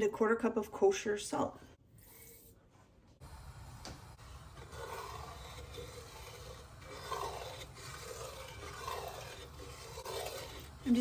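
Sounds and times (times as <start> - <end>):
stove burner rushing: 3.2 - 11.0
liquid swishing as stirred: 3.3 - 11.0.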